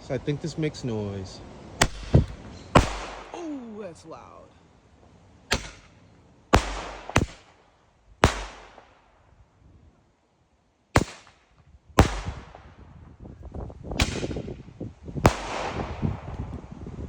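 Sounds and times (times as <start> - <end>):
small firework cracks: 6.6 - 9.2, 15.3 - 16.5.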